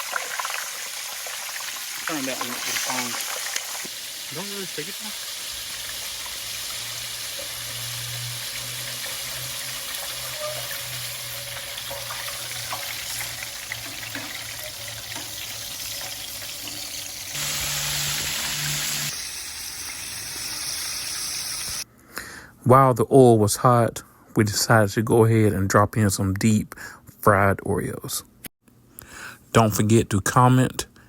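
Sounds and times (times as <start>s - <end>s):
deep fryer hissing and bubbling: 0.0s - 21.8s.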